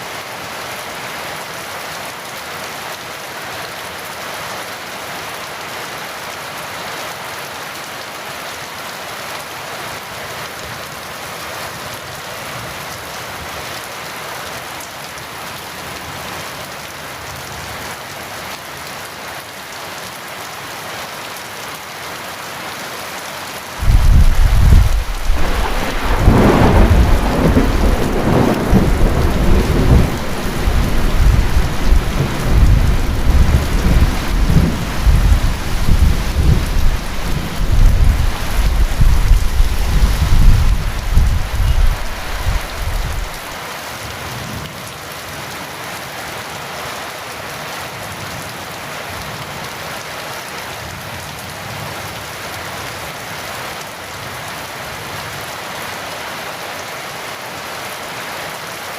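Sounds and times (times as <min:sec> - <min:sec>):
heavy rain falling: 0:00.0 - 0:58.9
thunder rumbling: 0:23.8 - 0:43.5.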